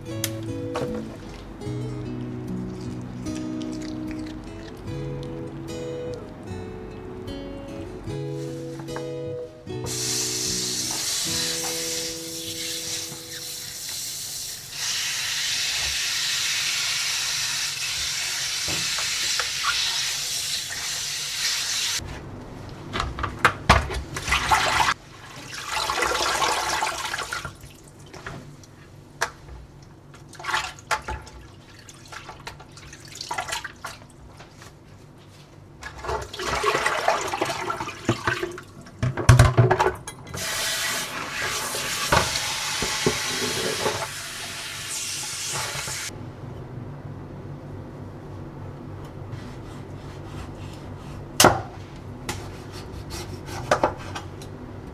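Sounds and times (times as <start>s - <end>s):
water splashing: 0.8s - 7.2s
tap running into a sink: 9.8s - 14.1s, 17.9s - 20.1s, 38.0s - 46.1s.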